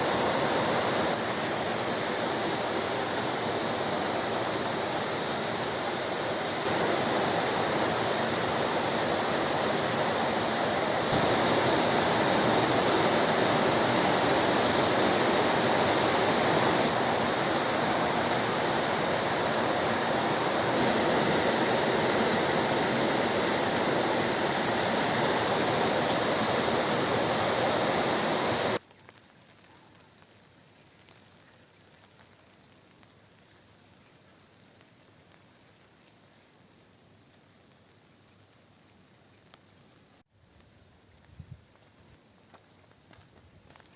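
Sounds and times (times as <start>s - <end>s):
heavy rain pouring: 0.0s - 28.8s.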